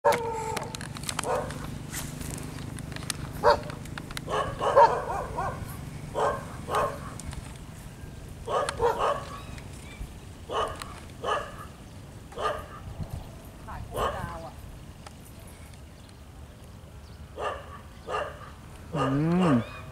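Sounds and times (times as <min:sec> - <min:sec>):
short pitched animal calls: 0:18.9 - 0:19.9.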